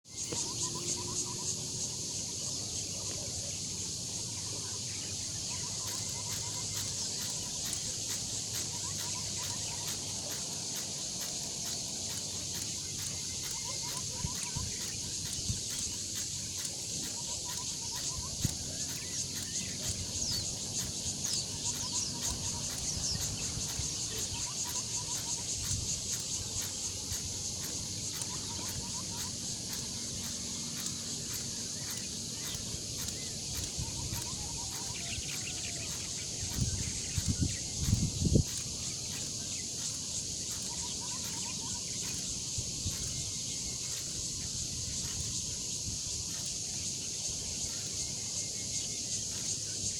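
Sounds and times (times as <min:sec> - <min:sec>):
birds chirping: 0:00.0 - 0:49.9
insects chirring: 0:00.0 - 0:49.9.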